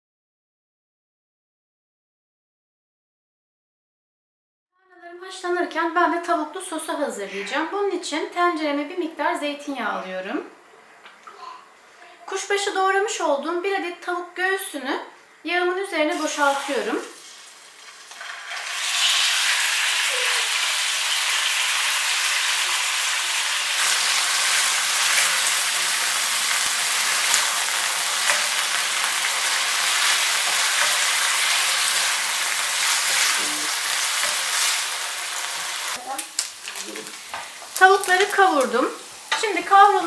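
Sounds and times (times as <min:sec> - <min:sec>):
chicken sizzling in oil: 0:16.1 - 0:40.0.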